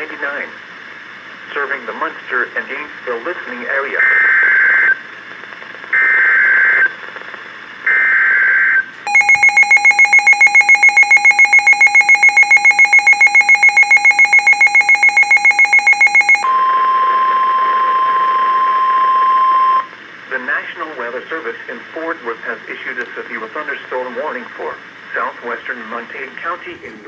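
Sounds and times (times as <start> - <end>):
rapid electronic beeping: 9.1 - 16.5
steady warning alarm tone: 9.1 - 19.9.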